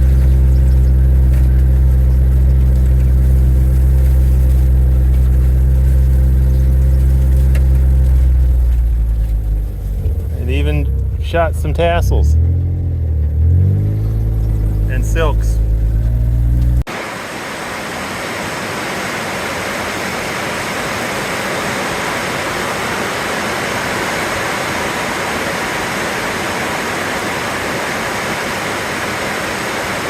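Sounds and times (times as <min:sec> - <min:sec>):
low engine drone: 0:00.0 - 0:30.0
steady rushing hiss: 0:16.9 - 0:30.0.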